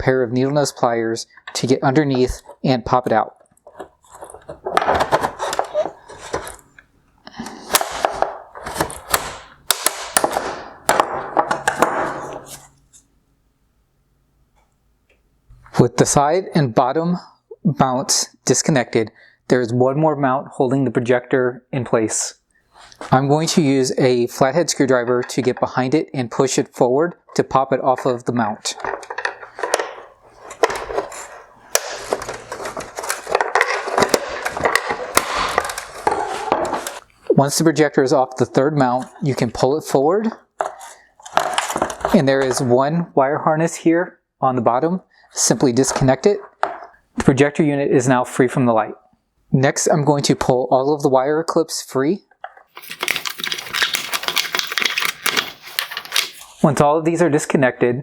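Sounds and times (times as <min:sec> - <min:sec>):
plastic scraping and rattling: 0:01.4 - 0:06.8, 0:07.4 - 0:12.8, 0:28.6 - 0:37.1, 0:40.6 - 0:42.7, 0:52.4 - 0:56.5.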